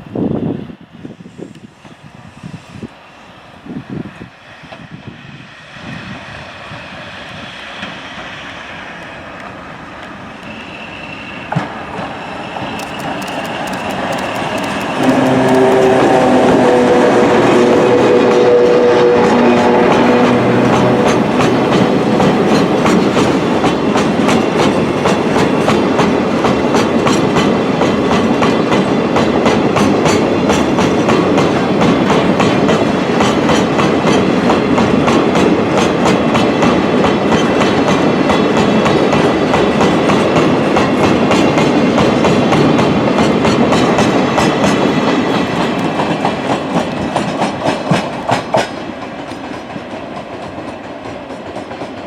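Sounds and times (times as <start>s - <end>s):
train wheels clicking over rail joints: 11.5s - 16.1s, 19.6s - 52.0s.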